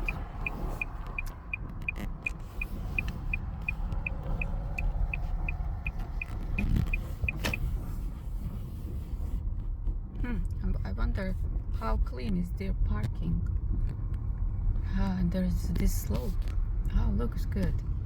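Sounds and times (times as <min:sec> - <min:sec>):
car turn signal ticking: 0:00.0 - 0:07.8
car engine and tyre rumble: 0:00.0 - 0:18.0.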